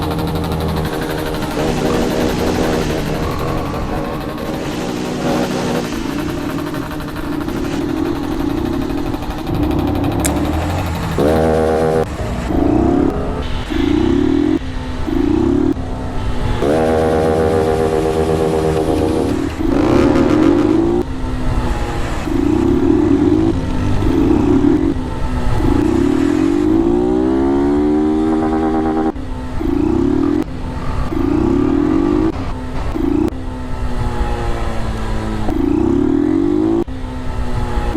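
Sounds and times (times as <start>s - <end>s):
motorcycle engines revving: 0.0s - 37.9s.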